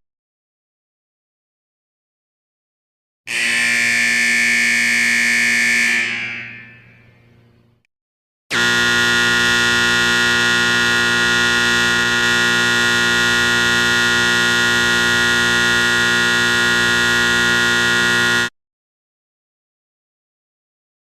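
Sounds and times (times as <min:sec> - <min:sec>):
alarm klaxon blaring: 0:03.3 - 0:07.2, 0:08.5 - 0:18.6.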